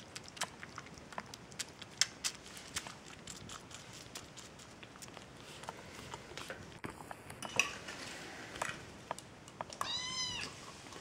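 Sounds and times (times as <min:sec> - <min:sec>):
kitten eating clicks and clinks: 0:00.0 - 0:07.9, 0:08.7 - 0:10.0
kitten mewing: 0:09.8 - 0:10.5.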